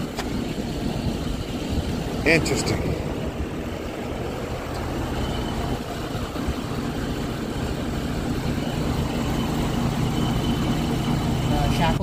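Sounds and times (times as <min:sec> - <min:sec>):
pickup truck engine idling: 0:00.0 - 0:12.0.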